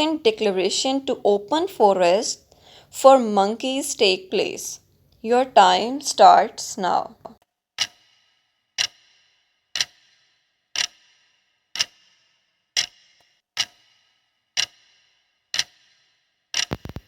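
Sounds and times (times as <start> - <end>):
clock ticks with ringing tail: 0.0 - 4.7, 5.3 - 17.0.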